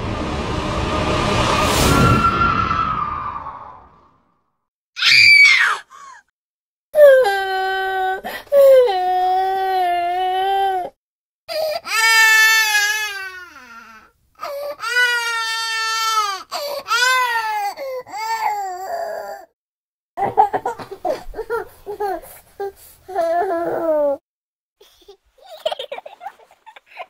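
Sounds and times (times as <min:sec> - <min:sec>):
high voice crying and sobbing: 0:23.2 - 0:24.2.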